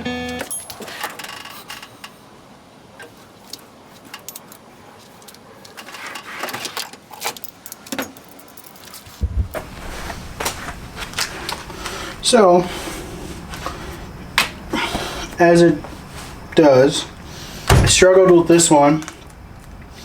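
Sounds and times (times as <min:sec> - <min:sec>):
metallic clinks of tools: 0:00.4 - 0:01.2.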